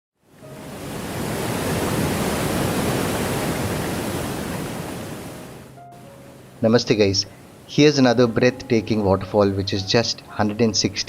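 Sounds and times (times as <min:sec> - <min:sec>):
waterfall rushing: 0:00.4 - 0:09.6.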